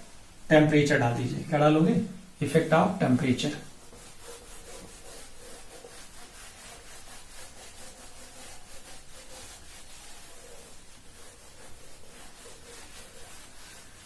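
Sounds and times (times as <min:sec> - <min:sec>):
pen scratching on paper: 0:03.8 - 0:13.9.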